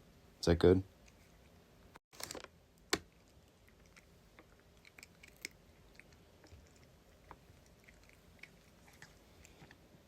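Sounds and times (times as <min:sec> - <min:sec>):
cat chewing crunches: 0:03.0 - 0:09.8.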